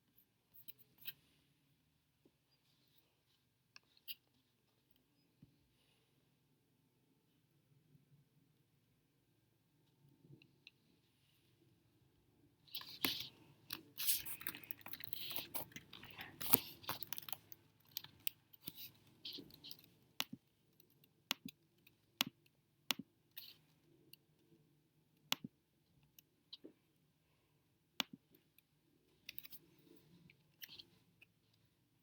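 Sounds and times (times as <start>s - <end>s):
close crackling and rustling: 12.7s - 20.0s.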